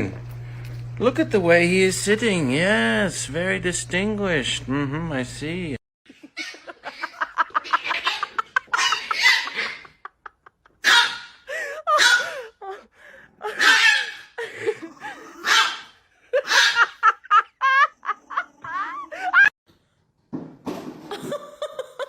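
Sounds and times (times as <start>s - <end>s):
people laughing: 6.1s - 10.8s, 16.2s - 19.5s, 21.1s - 22.0s
high wavering giggles: 16.2s - 19.5s.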